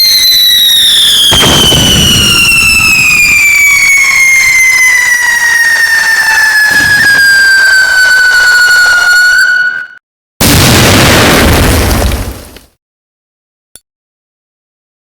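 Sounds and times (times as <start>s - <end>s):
whistling firework: 0.0s - 10.0s
firework bang: 0.0s - 12.7s.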